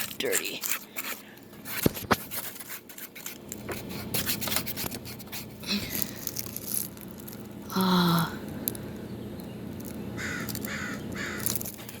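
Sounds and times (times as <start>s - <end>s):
scraping and rubbing handling: 0.0s - 7.6s
faint steady hum: 0.0s - 12.0s.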